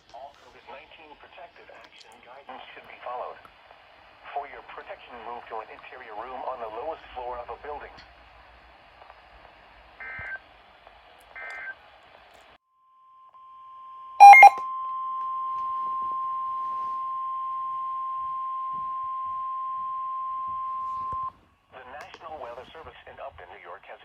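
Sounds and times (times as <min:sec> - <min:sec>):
faint radio hiss: 0:00.0 - 0:09.6, 0:21.8 - 0:24.0
sharp double beep: 0:14.2 - 0:14.6
short blips: 0:14.2 - 0:14.6
steady high alarm tone: 0:14.2 - 0:14.6.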